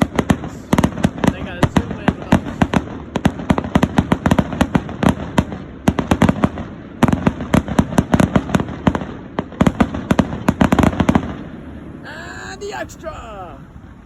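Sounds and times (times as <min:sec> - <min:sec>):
fireworks exploding: 0:00.0 - 0:13.4.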